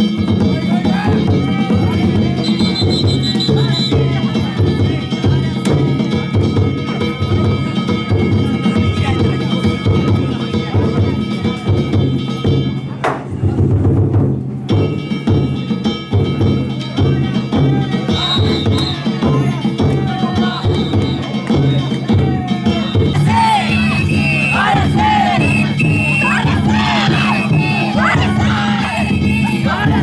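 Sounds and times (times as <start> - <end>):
taiko drum beat: 0.0 - 30.0
crowd shouting: 22.4 - 30.0
ringing hand gongs: 23.1 - 30.0.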